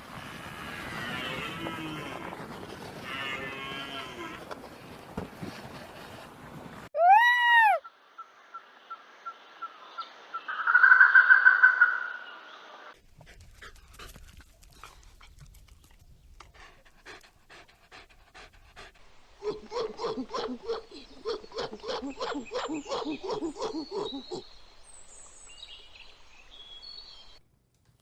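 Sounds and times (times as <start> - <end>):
dog panting: 13.0 - 19.0.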